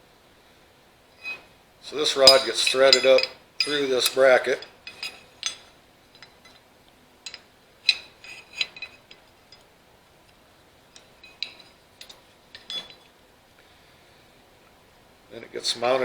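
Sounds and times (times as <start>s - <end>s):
metal rod clinking and scraping: 1.2s - 6.6s, 7.2s - 9.6s, 11.0s - 13.1s.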